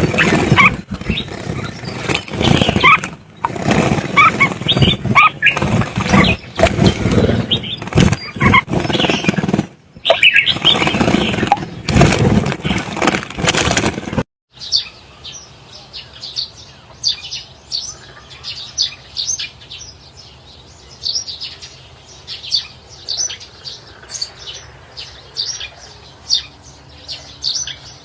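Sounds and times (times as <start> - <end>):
rough rumbling noise: 0.0 - 14.2
small birds chirping: 0.0 - 28.0.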